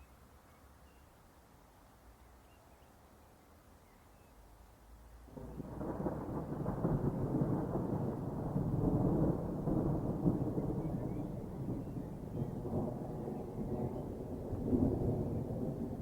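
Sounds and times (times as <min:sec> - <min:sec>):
rolling thunder rumble: 0:05.3 - 0:16.0.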